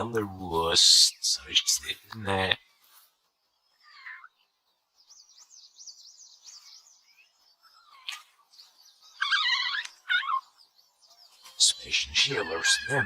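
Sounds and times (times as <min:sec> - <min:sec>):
small birds twittering: 0:00.0 - 0:13.0.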